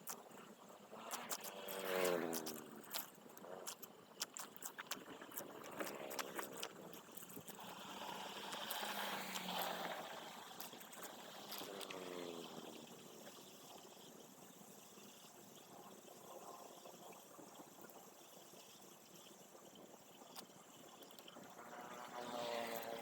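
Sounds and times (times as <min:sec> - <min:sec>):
sharp clicks and crackles: 0:00.0 - 0:00.5, 0:01.1 - 0:12.1
water running through a drain: 0:00.0 - 0:23.0.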